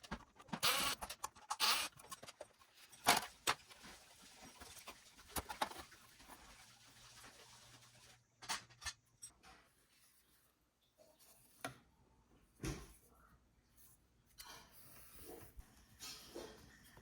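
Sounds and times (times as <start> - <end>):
tools and small parts clicking: 0.1 - 3.2.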